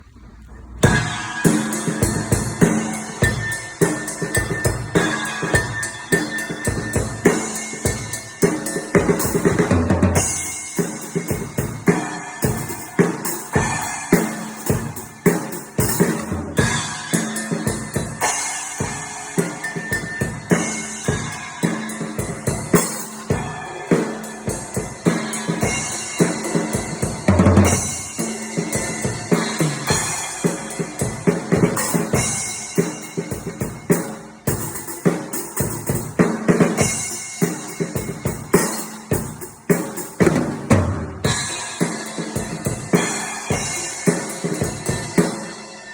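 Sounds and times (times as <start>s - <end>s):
drum kit playing: 0.7s - 45.9s.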